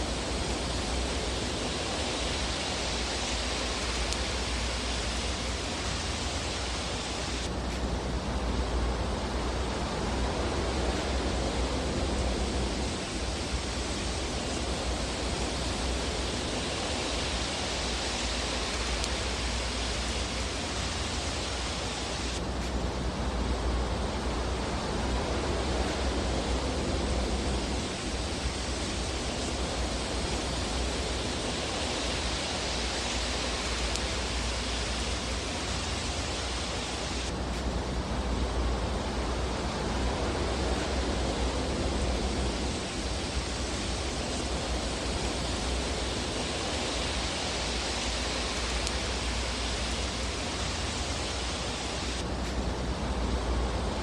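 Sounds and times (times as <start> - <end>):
fire burning in fireplace: 0.0 - 54.0.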